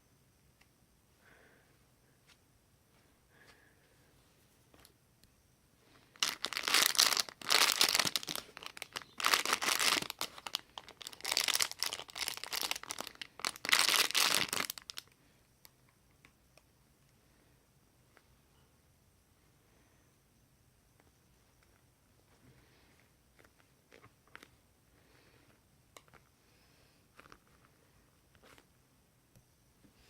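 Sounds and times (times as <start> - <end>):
packaging crinkling: 6.1 - 15.1.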